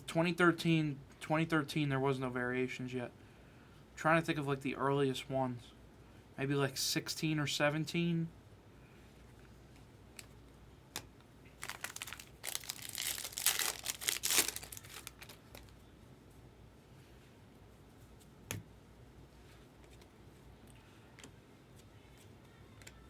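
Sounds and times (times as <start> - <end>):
foil wrapper tearing and crinkling: 11.6 - 15.7.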